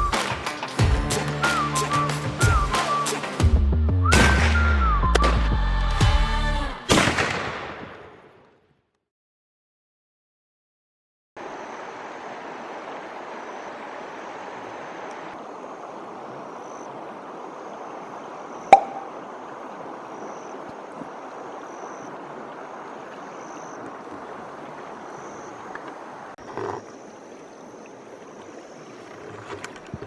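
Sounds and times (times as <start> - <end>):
stream rushing: 0.0 - 3.4, 11.4 - 26.4
faint high chirps: 18.7 - 19.1.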